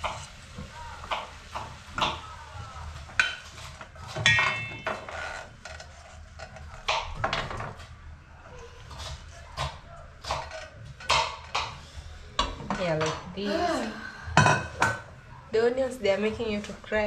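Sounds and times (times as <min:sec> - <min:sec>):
pots and pans clattering: 0:02.9 - 0:07.9, 0:08.9 - 0:11.8, 0:14.4 - 0:15.1
ringing metallic clang: 0:04.2 - 0:05.0.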